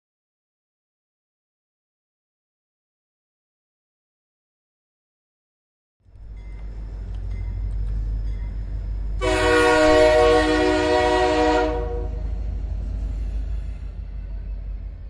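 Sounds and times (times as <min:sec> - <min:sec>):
train horn blast: 0:09.2 - 0:12.3.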